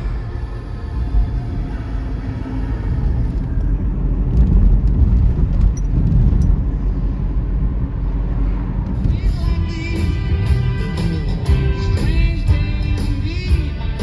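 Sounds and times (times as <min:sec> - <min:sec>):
passing train rumble: 0:00.0 - 0:14.0.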